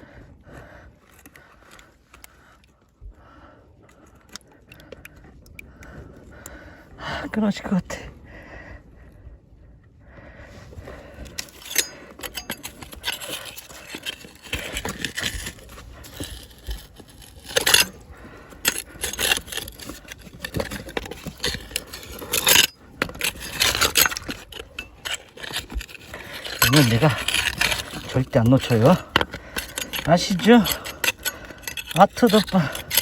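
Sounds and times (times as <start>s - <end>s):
hand scraping in wet mud: 11.4s - 33.0s.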